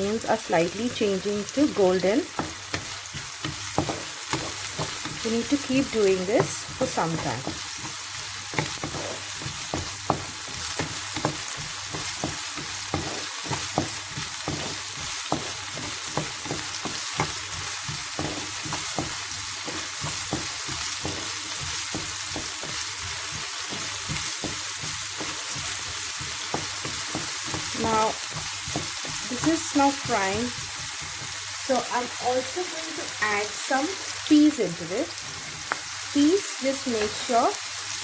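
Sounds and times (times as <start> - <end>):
vegetables sizzling in oil: 0.0 - 38.0
utensil scraping pan: 1.8 - 31.5.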